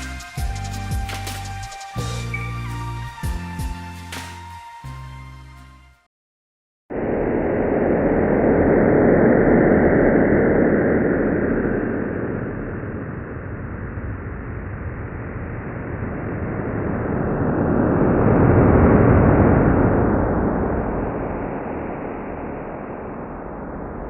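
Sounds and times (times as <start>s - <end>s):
dense low wash of noise: 6.9s - 24.0s.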